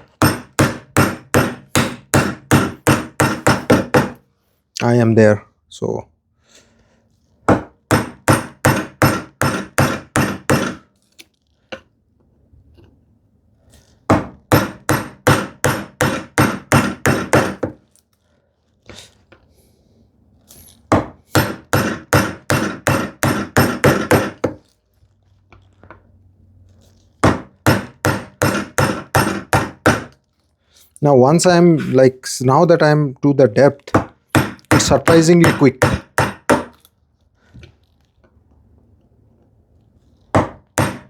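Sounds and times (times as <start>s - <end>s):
chisel struck chopping wood: 0.2s - 4.2s, 7.5s - 10.8s, 14.1s - 17.8s, 20.9s - 24.6s, 27.2s - 30.1s, 33.9s - 36.8s, 40.4s - 41.0s.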